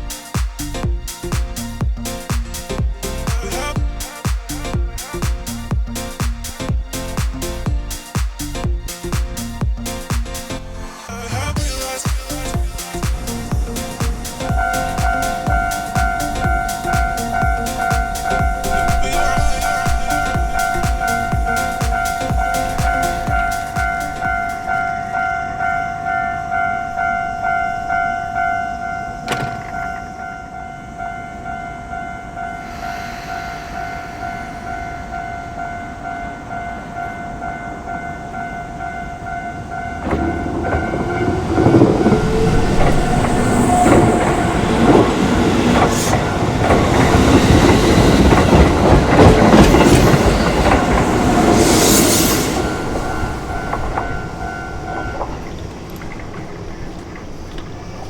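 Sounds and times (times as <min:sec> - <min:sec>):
train wheels clattering over rails: 0:11.6 - 0:25.0, 0:39.8 - 0:58.0
level crossing alarm ringing: 0:11.6 - 0:58.0.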